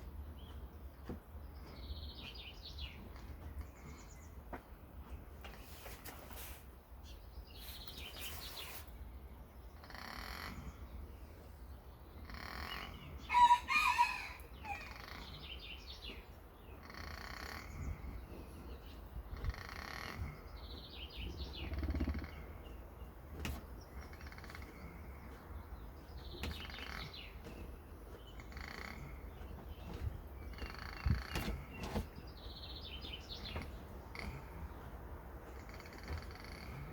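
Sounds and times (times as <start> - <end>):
short animal calls: 35.6 - 36.9.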